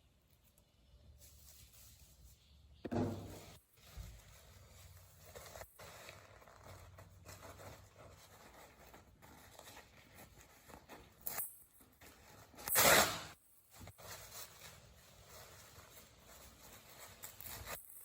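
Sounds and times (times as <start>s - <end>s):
paper towel crinkle: 0.2s - 18.0s
paper towel rustling: 1.1s - 11.2s, 13.7s - 17.8s
paper towel ripping: 3.2s - 11.4s, 12.0s - 18.0s.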